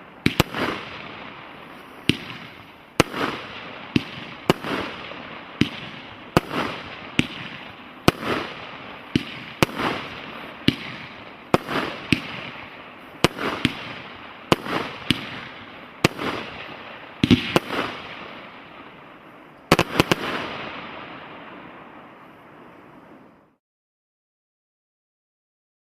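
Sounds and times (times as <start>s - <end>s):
aerial fireworks bangs: 2.0s - 18.4s.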